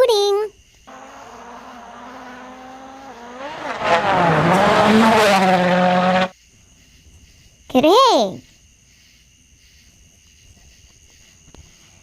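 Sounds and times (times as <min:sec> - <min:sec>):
race car engine revving: 0:00.9 - 0:06.3.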